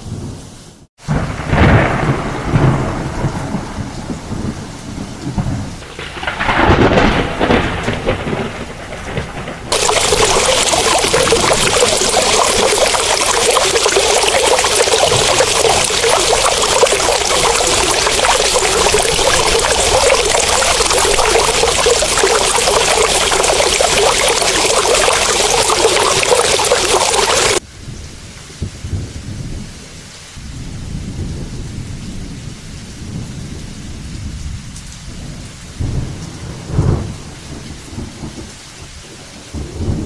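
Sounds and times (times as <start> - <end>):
rush of pouring water: 5.8 - 27.7.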